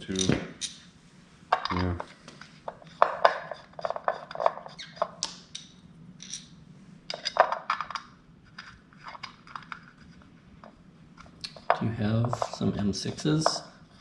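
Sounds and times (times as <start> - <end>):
metal parts and tools clinking: 2.7 - 9.8.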